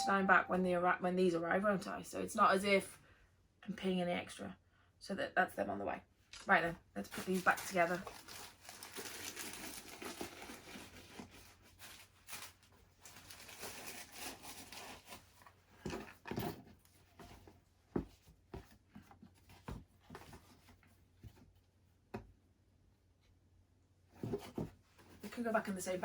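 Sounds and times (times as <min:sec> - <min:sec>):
shoe packaging crinkling: 0:07.1 - 0:15.2.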